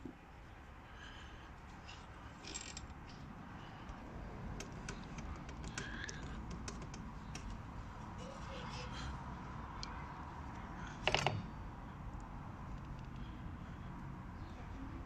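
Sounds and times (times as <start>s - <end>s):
hand tools clicking and tapping: 4.6s - 7.6s.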